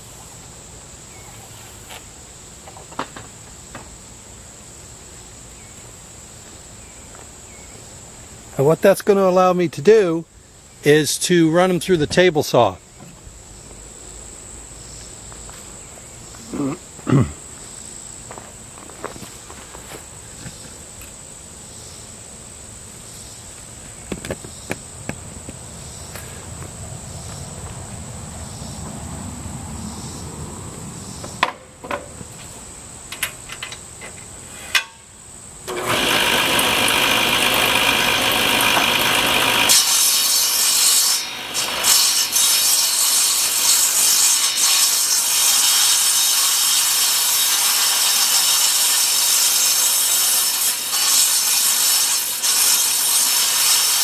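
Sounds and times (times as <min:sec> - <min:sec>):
crickets chirping: 0:00.0 - 0:35.7
table saw cutting wood: 0:35.7 - 0:54.0.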